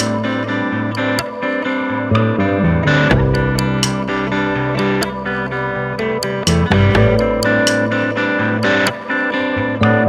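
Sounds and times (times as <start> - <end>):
light regular beat: 0.0 - 0.3, 3.1 - 4.4, 6.2 - 8.2
plucked guitar: 0.0 - 10.0
bass line: 2.4 - 8.8.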